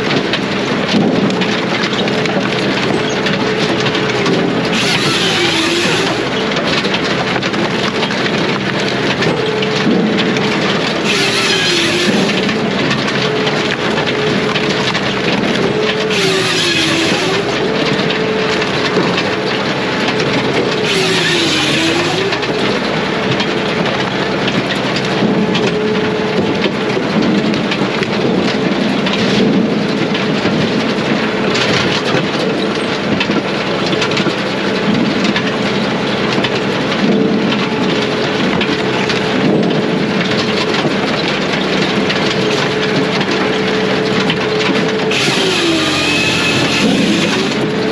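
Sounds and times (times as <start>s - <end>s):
firewood processor running: 0.0s - 47.9s.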